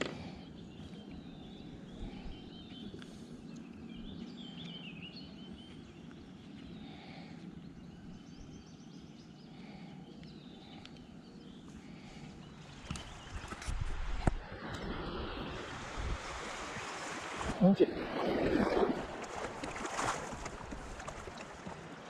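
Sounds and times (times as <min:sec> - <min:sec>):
birds warbling faintly: 0:00.0 - 0:14.4
wind: 0:00.0 - 0:22.0.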